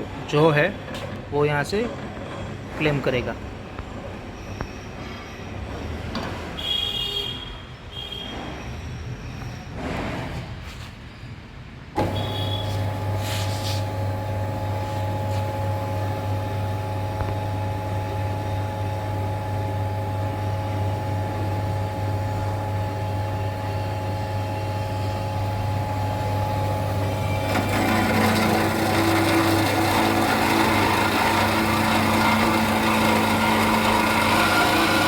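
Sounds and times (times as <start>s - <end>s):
band saw motor humming and whining: 24.4s - 35.0s.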